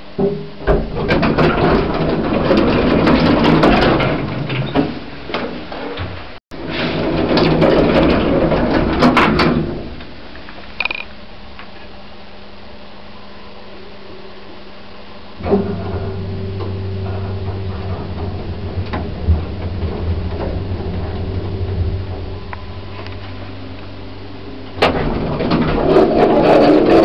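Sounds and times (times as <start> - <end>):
lift machinery rattling and clicking: 0.2 - 10.2, 15.4 - 24.0, 24.6 - 27.0
low steady hum: 6.3 - 27.0.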